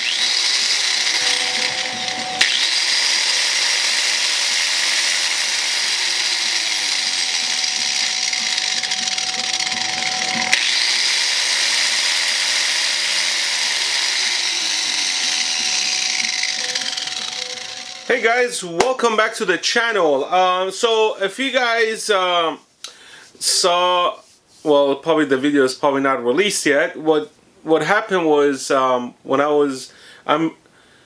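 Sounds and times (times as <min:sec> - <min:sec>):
angle grinder whining: 0:00.0 - 0:18.6.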